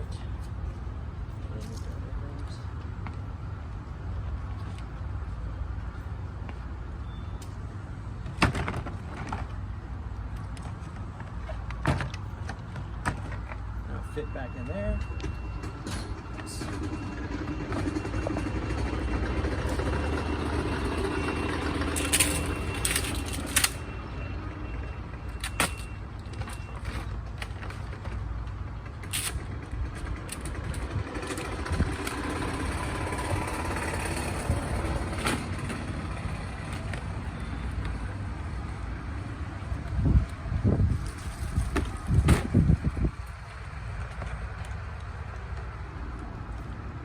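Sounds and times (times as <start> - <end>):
low outdoor rumble: 15.6 - 47.0.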